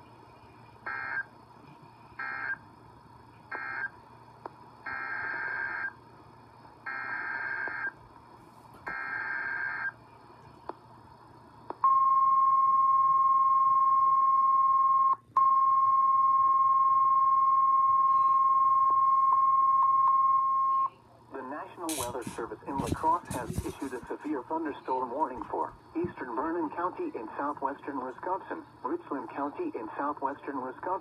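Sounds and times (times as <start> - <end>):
steady warning alarm tone: 0.8 - 1.4, 2.1 - 2.7, 4.8 - 6.0, 6.8 - 8.0.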